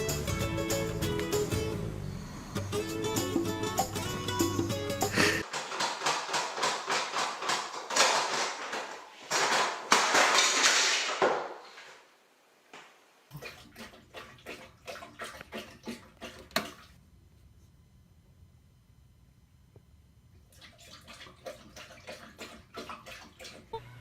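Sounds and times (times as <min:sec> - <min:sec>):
water splashing in a bathtub: 0:05.4 - 0:11.4, 0:13.3 - 0:17.0, 0:20.4 - 0:23.8.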